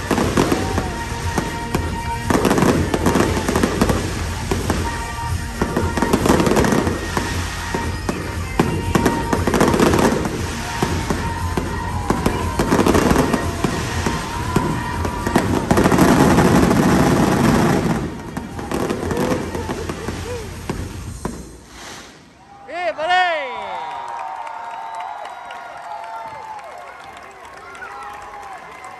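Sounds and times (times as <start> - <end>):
fireworks booming and crackling: 0.0 - 22.4.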